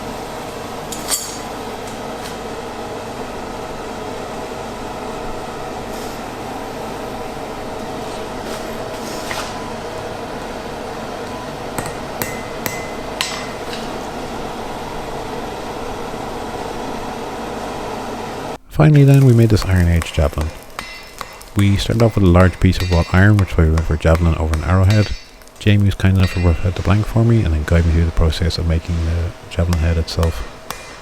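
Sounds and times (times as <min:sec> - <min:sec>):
hammer striking iron on anvil: 0:00.9 - 0:01.6, 0:11.8 - 0:14.0, 0:18.9 - 0:31.0.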